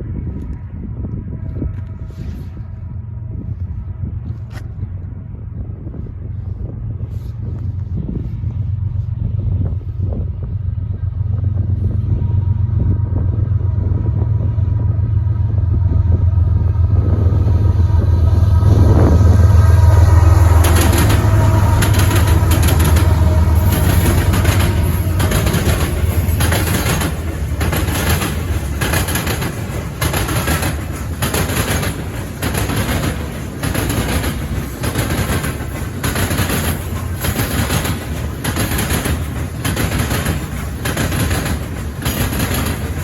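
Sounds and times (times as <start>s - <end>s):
locomotive low rumble: 0.0s - 43.0s
train cars rolling past: 0.0s - 43.0s
steel wheels clacking on track: 14.3s - 43.0s.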